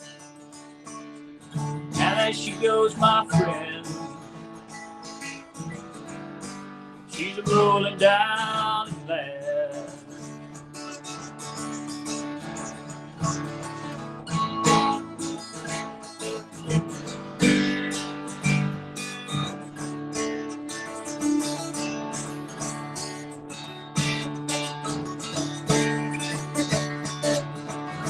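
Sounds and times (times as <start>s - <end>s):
acoustic guitar: 0.0s - 28.0s.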